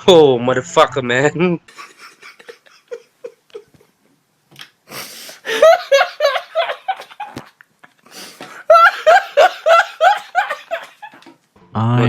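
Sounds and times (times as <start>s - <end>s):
person laughing: 1.7s - 3.9s, 5.4s - 11.3s.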